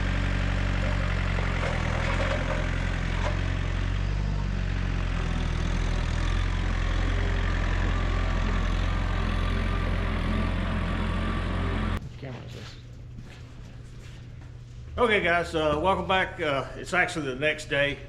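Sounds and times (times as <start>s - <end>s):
engine running: 0.0s - 12.0s.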